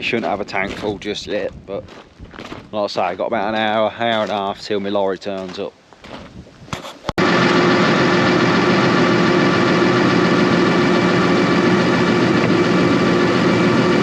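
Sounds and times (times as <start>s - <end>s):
diesel engine running: 7.2s - 14.0s
steady whine: 7.2s - 14.0s.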